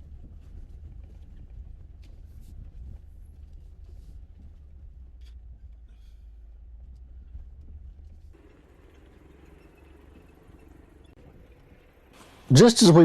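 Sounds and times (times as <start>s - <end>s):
off-road vehicle rumbling: 0.0s - 13.0s.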